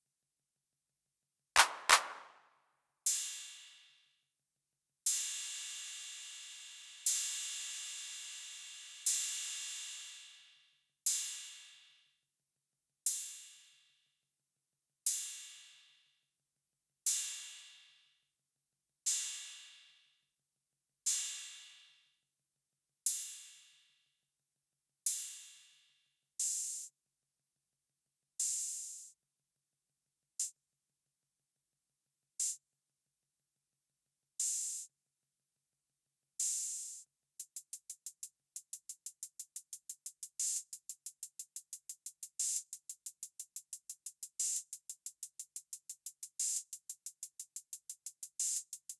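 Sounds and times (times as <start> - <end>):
drum machine cymbal hits: 1.6 - 2.3, 37.4 - 48.9
hi-hat ticks: 1.6 - 2.3, 34.4 - 34.9, 36.4 - 48.9.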